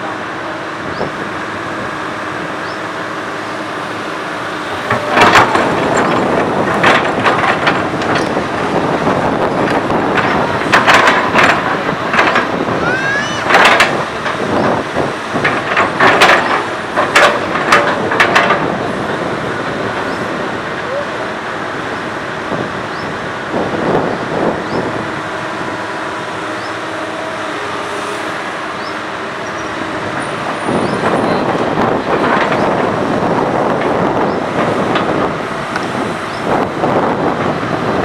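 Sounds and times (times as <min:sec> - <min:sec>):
excavator diesel engine running: 0:00.0 - 0:38.0
metallic clanks and knocks: 0:04.8 - 0:08.7, 0:09.6 - 0:12.6, 0:13.4 - 0:14.8, 0:15.4 - 0:18.8
rising squeal: 0:12.8 - 0:13.5.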